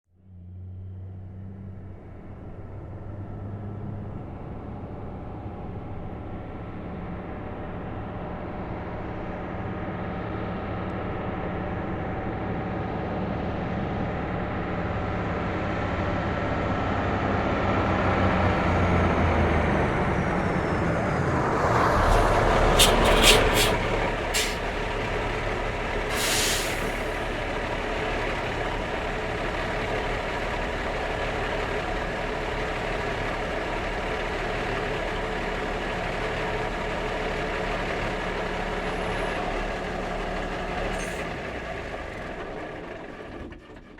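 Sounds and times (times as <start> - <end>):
truck diesel engine: 0.2 - 43.9
air brake hisses: 21.9 - 24.8, 26.1 - 27.3.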